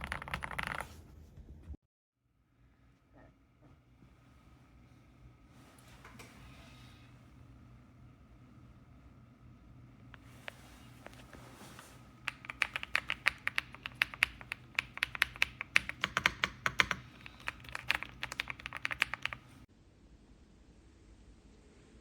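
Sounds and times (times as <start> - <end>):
mechanical keyboard typing: 0.0 - 0.9, 12.3 - 19.6.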